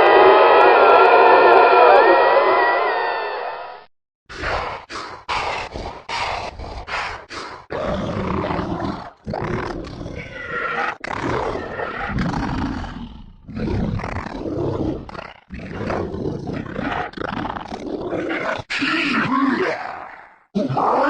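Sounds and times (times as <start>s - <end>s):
monster growling roars: 4.3s - 21.0s.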